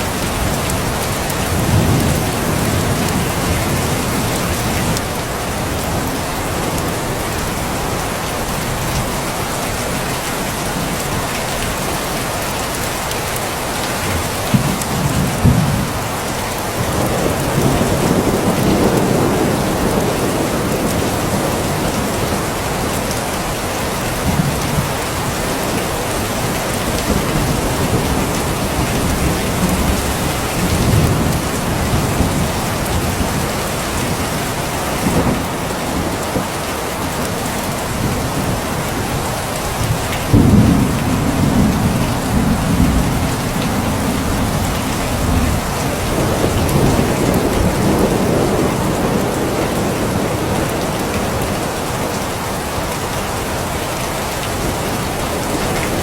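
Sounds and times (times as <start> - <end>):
heavy rain falling: 0.0 - 56.0
thunder rumbling: 16.7 - 36.6, 37.7 - 52.8.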